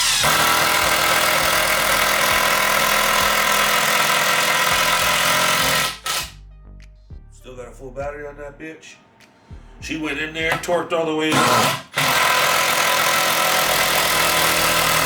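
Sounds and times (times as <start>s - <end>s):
cordless drill driving screw: 0.0s - 6.3s, 11.3s - 15.0s.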